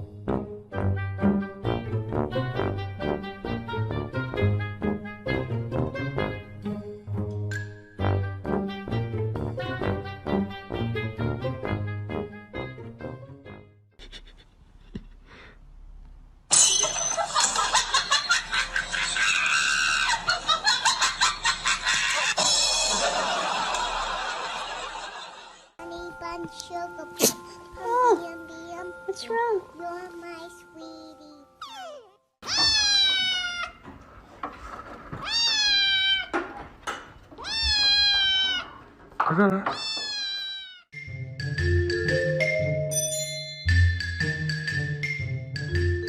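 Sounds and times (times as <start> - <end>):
cat meowing: 31.6 - 33.9, 35.2 - 36.4, 37.3 - 38.8, 39.7 - 40.9.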